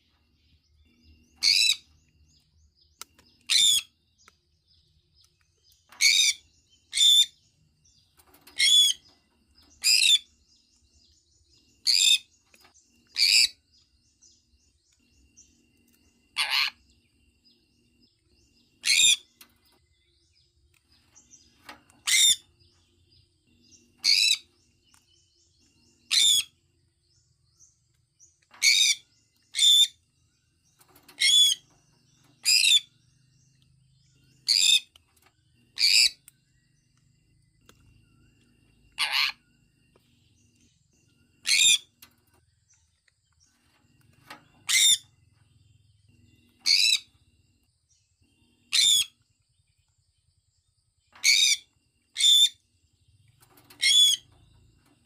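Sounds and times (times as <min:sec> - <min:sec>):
parrot chirping: 0:01.4 - 0:01.9, 0:03.4 - 0:03.9, 0:08.6 - 0:09.0, 0:13.1 - 0:13.6, 0:16.4 - 0:16.8, 0:22.0 - 0:22.5, 0:26.1 - 0:26.5, 0:31.2 - 0:31.6, 0:39.0 - 0:39.4, 0:41.4 - 0:41.9, 0:44.6 - 0:45.1, 0:46.6 - 0:47.1, 0:48.7 - 0:49.2, 0:51.2 - 0:52.6, 0:53.7 - 0:54.3.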